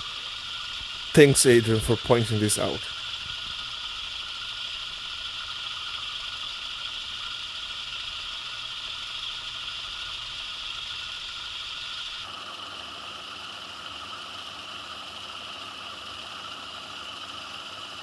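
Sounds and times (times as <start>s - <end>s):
lathe running steadily: 12.2s - 18.0s
low motor hum: 12.2s - 18.0s.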